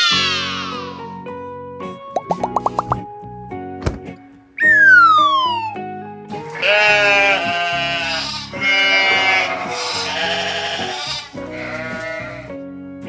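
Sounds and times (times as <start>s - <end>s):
children's background music: 2.2s - 3.0s, 4.3s - 13.0s
sheep bleating: 6.4s - 12.5s.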